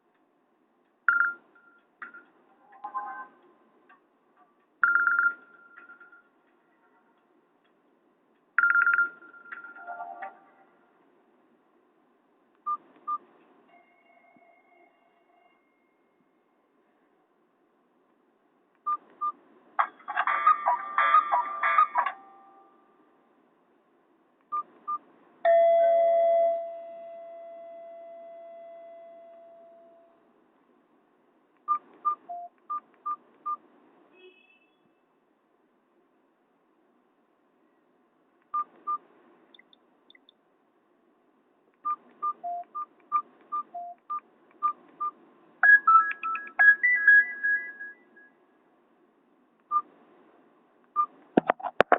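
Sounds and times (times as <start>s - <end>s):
phone key beeps: 1.1s - 1.9s, 8.6s - 10.3s, 41.8s - 47.9s
phone ringtone beeps: 4.8s - 6.3s, 8.6s - 10.3s, 45.6s - 48.3s
bell-like ringtone chime: 13.7s - 16.2s, 25.5s - 29.9s.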